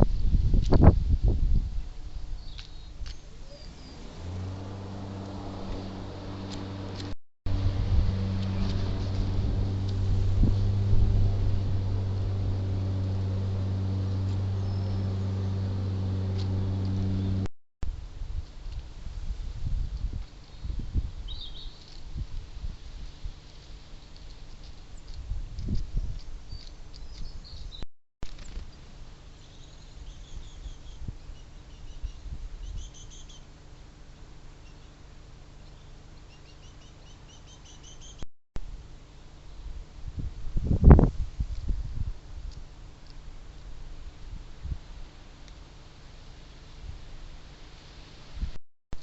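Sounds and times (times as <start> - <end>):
low outdoor rumble: 0.0 - 21.2
low mechanical engine hum: 1.5 - 19.2
small birds chirping: 2.1 - 7.1, 11.0 - 17.5, 23.9 - 27.8, 28.4 - 33.5, 34.6 - 38.2.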